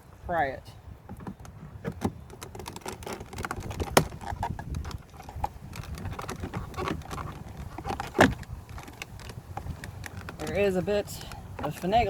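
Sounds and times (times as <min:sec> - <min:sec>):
plastic clicks and scrapes: 0:01.1 - 0:10.6.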